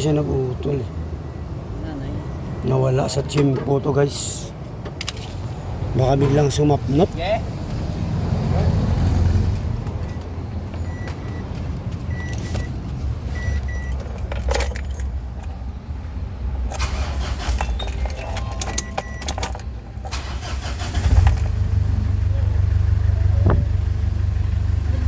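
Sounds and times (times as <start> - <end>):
low engine hum: 7.5 - 25.0
metallic clinking and jangling: 13.4 - 15.9, 16.6 - 22.0.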